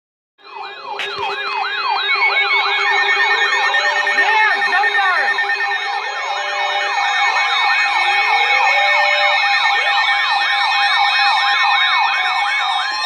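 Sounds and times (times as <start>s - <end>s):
falling siren-like alarm tone: 0.4s - 13.0s
steady alert tones: 0.6s - 8.4s.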